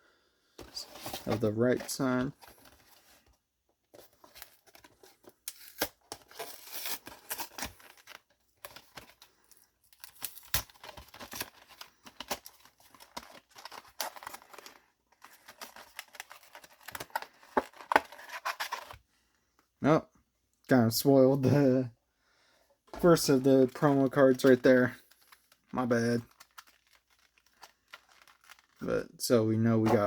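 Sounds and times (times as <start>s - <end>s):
packaging tearing and crinkling: 4.3s - 19.0s, 23.0s - 28.9s.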